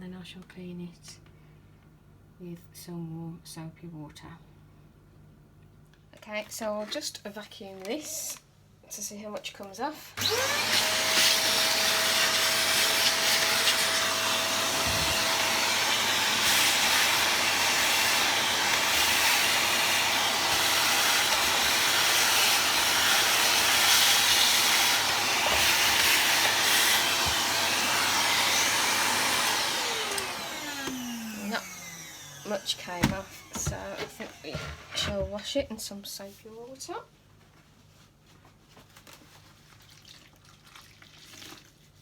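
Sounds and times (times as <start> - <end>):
vacuum cleaner motor whine: 10.2 - 35.3.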